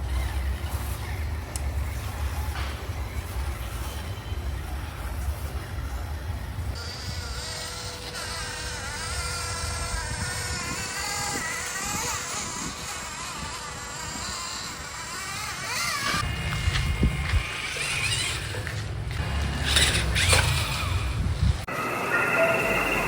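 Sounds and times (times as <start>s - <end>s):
small electric motor whining: 6.8s - 21.7s.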